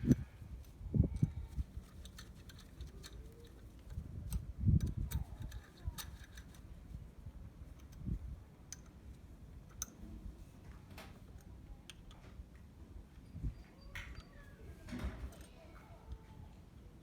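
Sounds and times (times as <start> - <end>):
hand tools clicking and knocking: 1.2 - 6.7.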